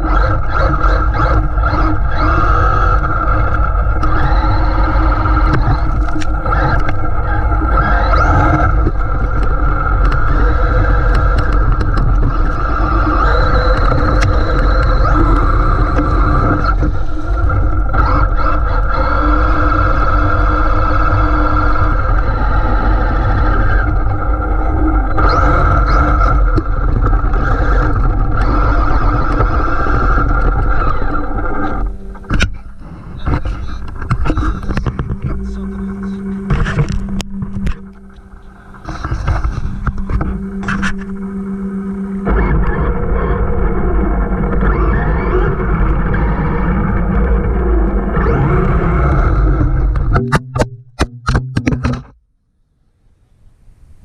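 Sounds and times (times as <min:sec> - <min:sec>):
electric motor whine: 0:00.0 - 0:50.6
heavy rumble: 0:00.0 - 0:52.2
sharp knock: 0:50.2 - 0:52.1.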